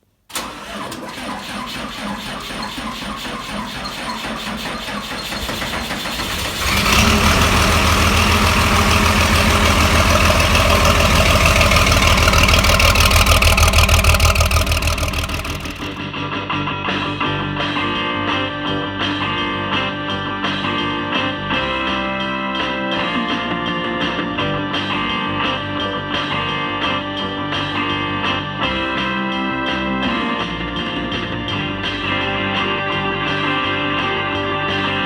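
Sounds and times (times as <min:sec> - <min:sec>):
engine running: 0:00.3 - 0:16.0.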